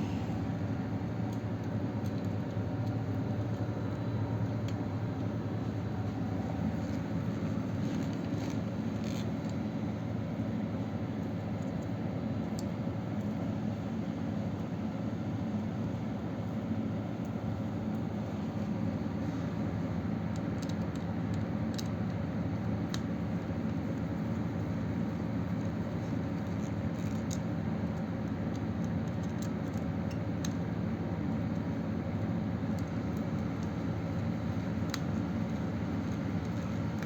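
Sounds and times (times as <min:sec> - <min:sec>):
low machinery rumble: 0:00.0 - 0:11.2
faint clicks of wires: 0:01.2 - 0:05.4, 0:20.3 - 0:30.7, 0:31.3 - 0:37.0.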